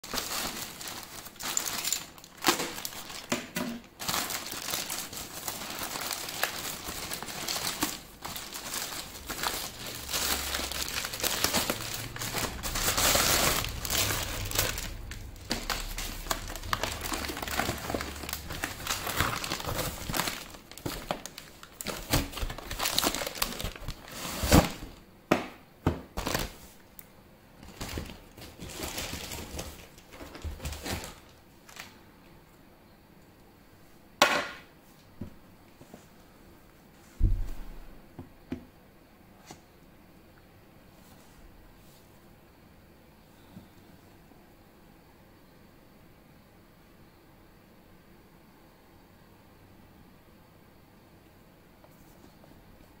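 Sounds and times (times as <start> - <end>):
plastic packaging crinkling and tearing: 0.0 - 25.0, 26.2 - 26.8, 27.6 - 32.0.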